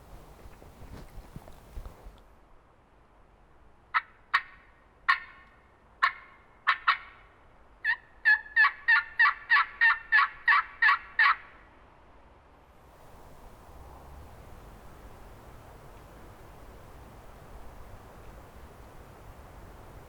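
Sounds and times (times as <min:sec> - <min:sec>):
turkey yelping: 0:03.9 - 0:05.4, 0:06.0 - 0:07.2, 0:07.8 - 0:11.5.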